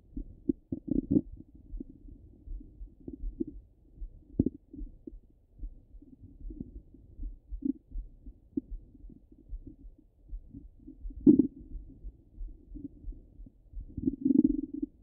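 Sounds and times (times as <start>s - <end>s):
stomach gurgles: 0.1s - 3.6s, 4.2s - 4.8s, 7.6s - 8.0s, 10.5s - 15.0s
faint low thumps: 0.1s - 15.0s.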